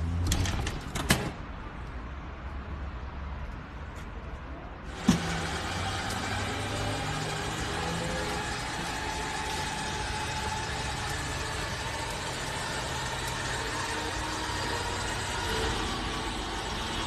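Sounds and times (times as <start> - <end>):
vehicle engine running: 4.9 - 17.0.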